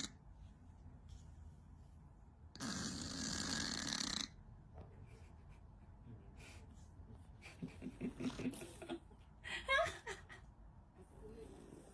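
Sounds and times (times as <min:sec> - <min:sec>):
cat snoring: 0:02.6 - 0:04.4, 0:11.1 - 0:11.9.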